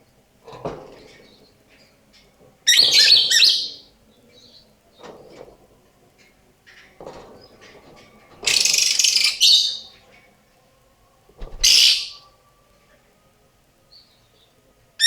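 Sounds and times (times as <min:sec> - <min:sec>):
lovebird screechy calls: 0:11.6 - 0:12.2.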